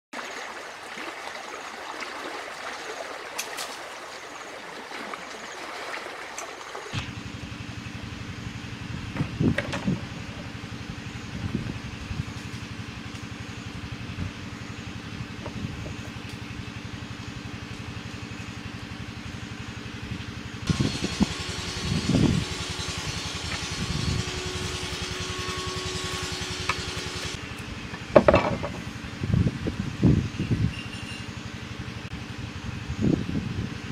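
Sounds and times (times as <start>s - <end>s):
flowing water rushing: 0.1s - 7.1s
small engine running: 6.9s - 33.9s.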